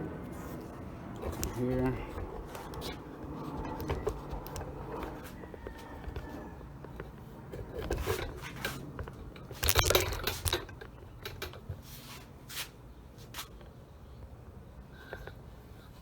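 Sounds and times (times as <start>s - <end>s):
small hard parts clicking: 1.2s - 11.8s.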